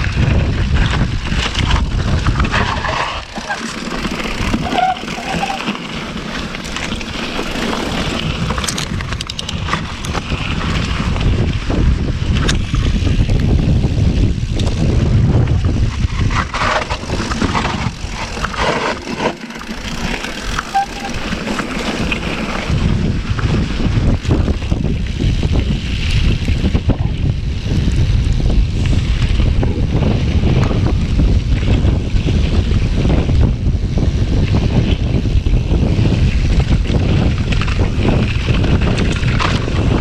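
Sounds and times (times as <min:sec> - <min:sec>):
bike rattles and clicks: 0:00.0 - 0:40.0
bike tyres crunching on dirt: 0:00.0 - 0:40.0
wind buffeting microphone: 0:00.0 - 0:40.0.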